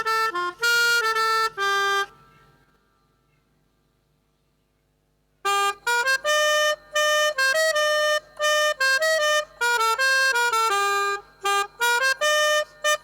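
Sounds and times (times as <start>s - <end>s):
melodica playing tune: 0.0s - 2.1s, 5.5s - 13.0s.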